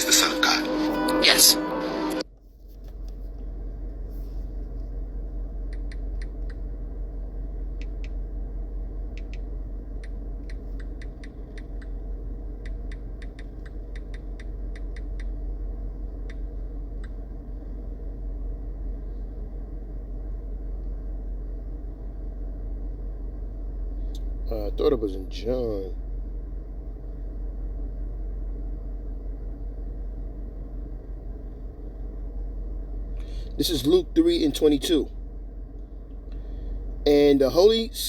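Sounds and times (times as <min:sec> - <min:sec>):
low hum: 0:00.0 - 0:38.0
keyboard typing clicks: 0:09.2 - 0:09.4, 0:12.6 - 0:15.3.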